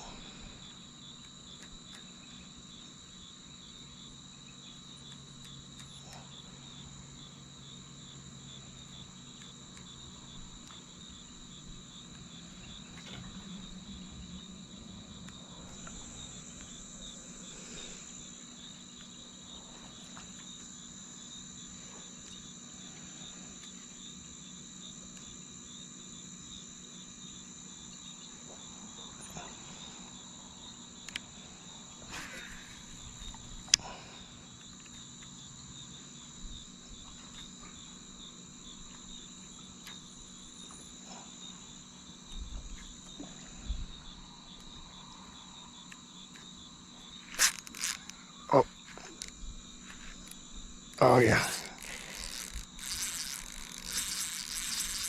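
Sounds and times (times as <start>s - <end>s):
insects chorus: 0.0s - 55.0s
small clicks: 47.3s - 48.2s, 51.5s - 55.0s.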